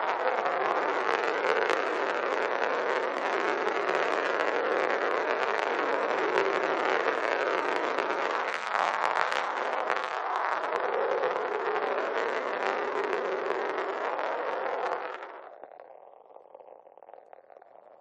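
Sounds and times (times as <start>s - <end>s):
glass marble rolling on hard surface: 0.0s - 18.0s.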